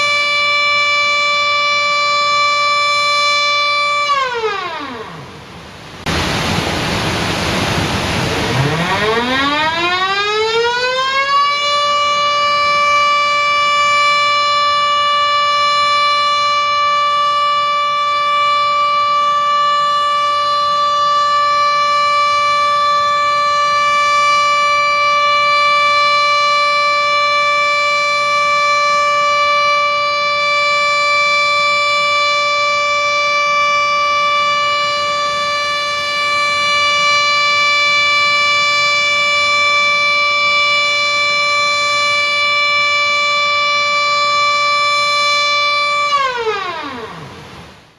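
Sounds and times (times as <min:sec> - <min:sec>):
warning siren winding up: 0:00.0 - 0:05.4, 0:08.4 - 0:47.7.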